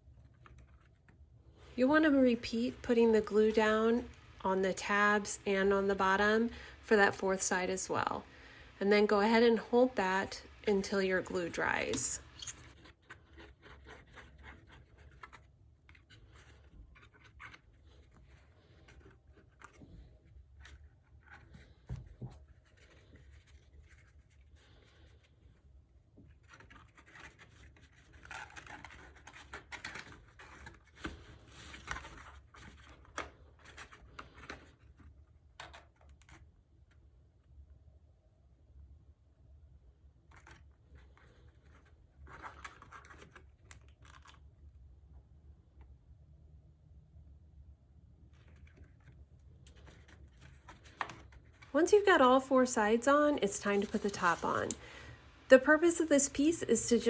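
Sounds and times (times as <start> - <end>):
cardstock rustling and scratching: 0.0 - 4.3, 10.8 - 25.4, 26.2 - 36.5, 40.3 - 44.5, 48.3 - 54.9.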